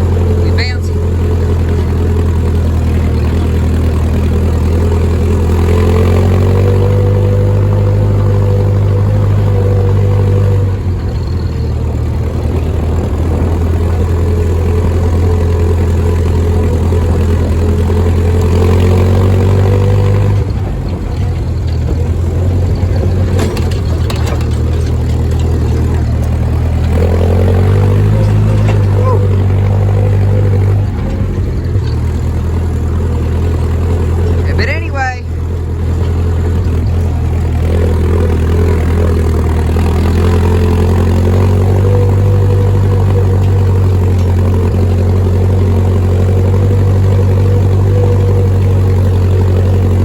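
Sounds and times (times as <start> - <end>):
tractor engine running: 0.0 - 50.0.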